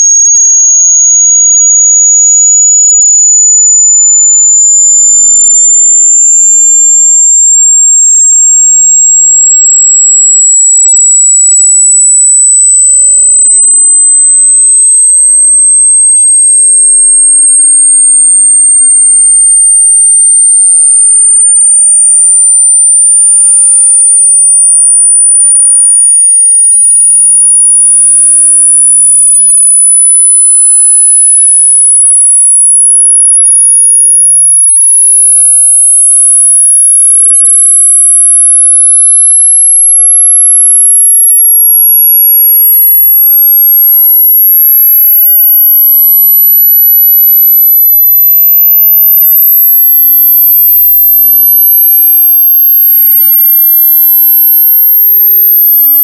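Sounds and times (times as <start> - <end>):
high-pitched sine tone: 0.0 - 56.0.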